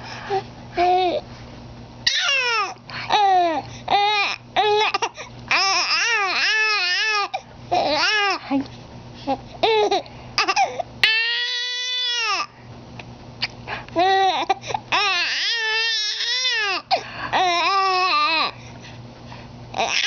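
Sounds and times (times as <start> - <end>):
baby shrieking with laughter: 2.0 - 2.7, 10.4 - 12.5.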